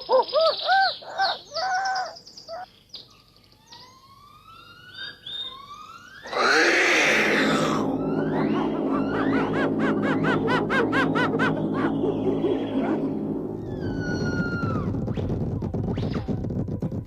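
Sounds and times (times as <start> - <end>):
hooting animal calls: 6.2 - 14.9
loud dense sound: 6.3 - 15.9.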